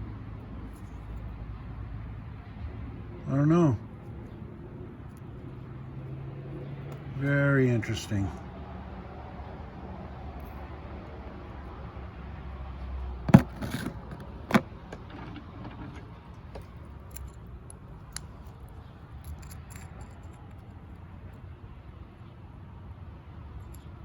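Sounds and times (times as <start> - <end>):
rock slabs knocking together: 13.3 - 15.9
light clicks of stone: 15.1 - 21.0.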